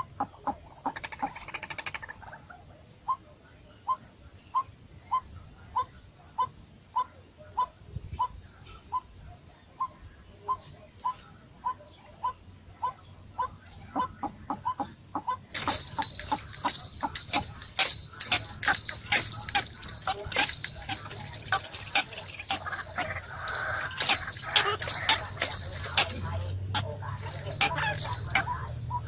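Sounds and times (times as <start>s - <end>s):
steady high ringing tone: 15.6s - 29.0s.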